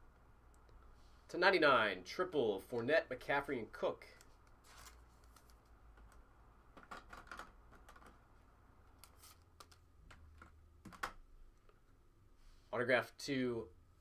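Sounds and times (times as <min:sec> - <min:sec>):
trading cards clicking and rustling: 0:04.1 - 0:08.3, 0:08.9 - 0:11.2.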